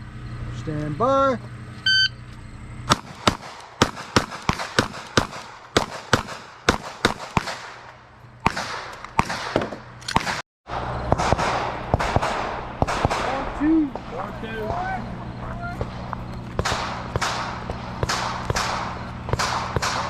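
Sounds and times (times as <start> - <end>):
pistol shots: 2.9 - 10.4, 11.1 - 14.8, 15.8 - 20.0.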